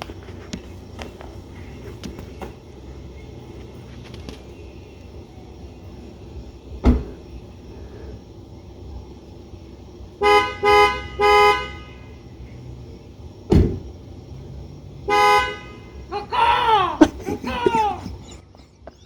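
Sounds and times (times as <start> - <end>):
thump: 6.8 - 7.2, 13.5 - 13.9
car horn honking: 10.2 - 12.3, 15.0 - 16.3
person making bird noises: 16.1 - 19.0.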